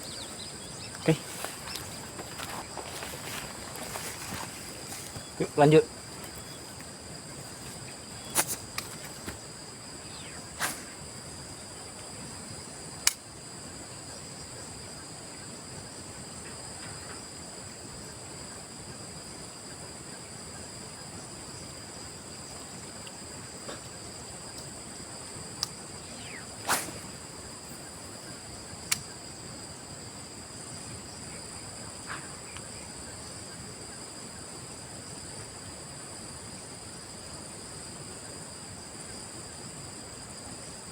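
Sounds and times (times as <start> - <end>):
insects chirring: 0.0 - 40.9
sharp swishes and clicks: 26.6 - 27.2.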